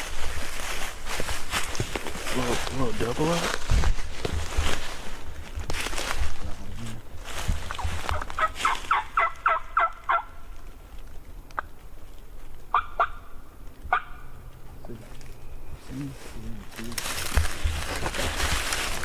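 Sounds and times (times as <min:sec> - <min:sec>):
turkey gobbling: 0:07.8 - 0:10.5, 0:12.7 - 0:14.7.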